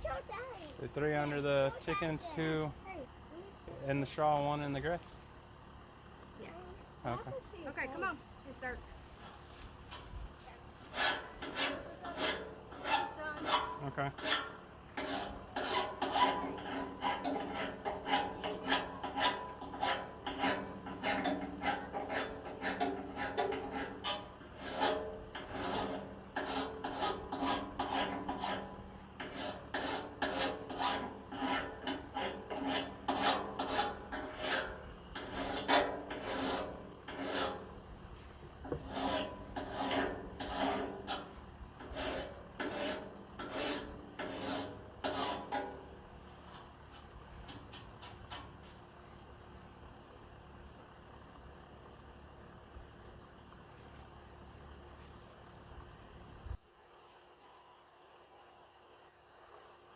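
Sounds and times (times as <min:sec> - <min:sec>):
metal file rasping on blade: 0:10.8 - 0:37.8, 0:38.6 - 0:46.0.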